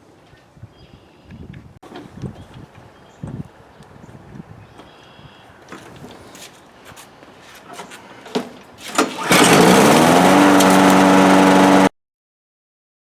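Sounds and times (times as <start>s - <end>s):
lawn mower engine starting and running: 8.8s - 11.9s.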